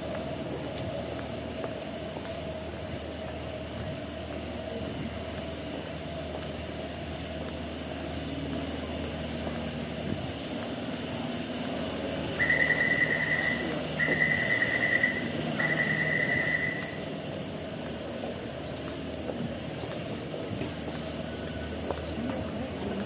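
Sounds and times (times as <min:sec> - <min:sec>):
metro train rumble and hum: 0:00.0 - 0:23.0
electronic warning beeps: 0:12.4 - 0:17.1.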